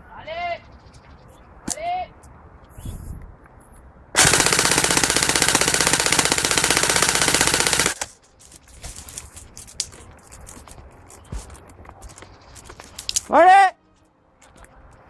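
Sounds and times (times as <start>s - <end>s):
airsoft gun automatic fire: 4.2s - 8.1s.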